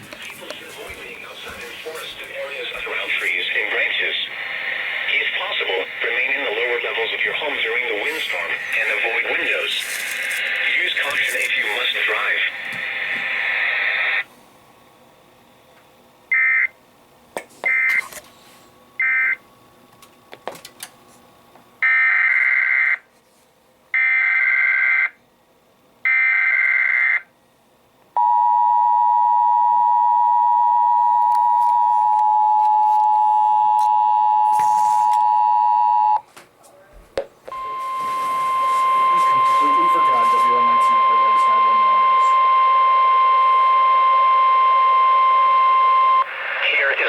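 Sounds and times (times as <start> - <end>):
two-tone attention signal: 37.6 - 46.3.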